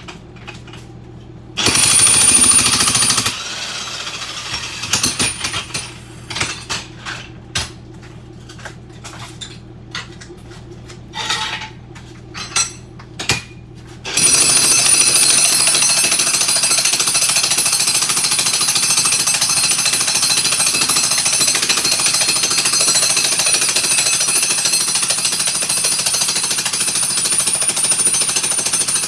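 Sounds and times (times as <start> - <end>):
jackhammer chipping tile: 1.6 - 6.5, 14.1 - 29.0.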